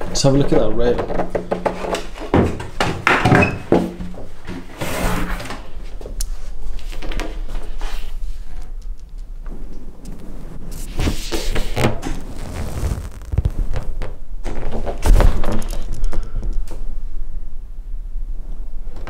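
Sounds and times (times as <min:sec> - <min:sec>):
paddleboard knocks and thuds: 0:00.9 - 0:04.7
paddleboard rubbing and tapping: 0:00.9 - 0:05.6.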